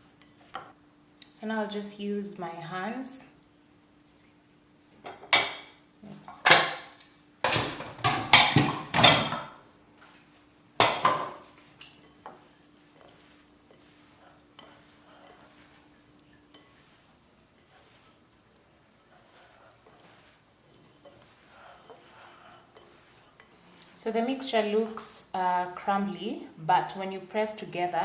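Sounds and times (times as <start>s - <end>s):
utensils and bowl clattering: 5.0s - 9.6s, 10.8s - 13.9s, 19.0s - 24.5s
dough worked by hand: 5.3s - 25.9s.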